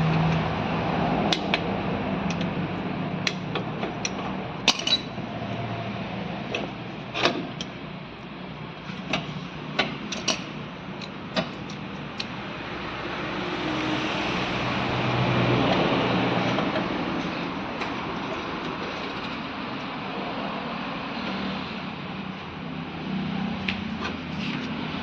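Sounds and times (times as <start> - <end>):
passing motor vehicle: 0.0 - 7.6, 8.8 - 25.0
metal tool clicks and clinks: 3.3 - 5.2.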